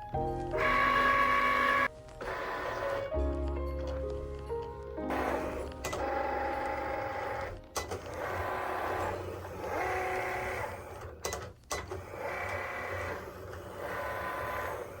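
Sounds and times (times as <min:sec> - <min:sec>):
soft held chords: 0:00.0 - 0:07.8.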